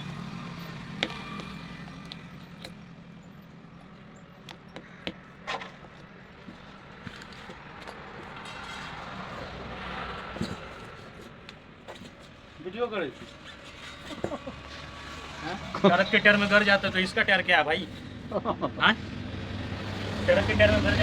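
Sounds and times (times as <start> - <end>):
sharp knocks and clicks on tyre: 0.0 - 2.9, 4.4 - 12.4
vehicle noise: 0.0 - 21.0.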